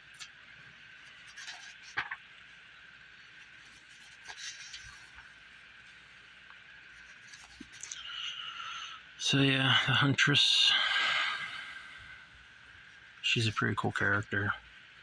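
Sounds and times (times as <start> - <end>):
faint steady hiss: 0.0 - 15.0
comic pages rustling: 1.0 - 2.6, 3.3 - 6.0, 6.8 - 8.0.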